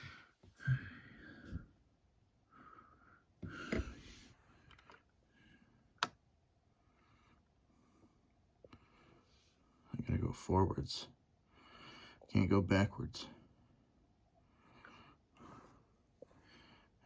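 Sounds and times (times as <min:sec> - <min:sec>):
soft breaths or rustles: 0:02.6 - 0:05.9, 0:14.5 - 0:17.0.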